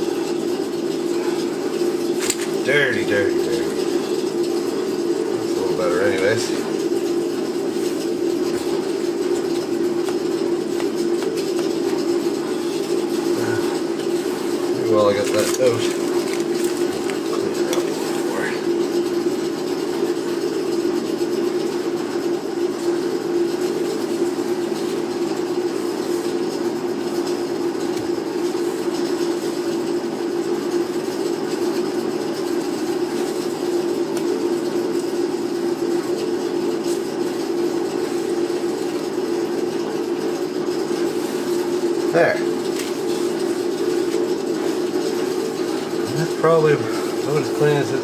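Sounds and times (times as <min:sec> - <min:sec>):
heater fan humming: 0:00.0 - 0:48.0.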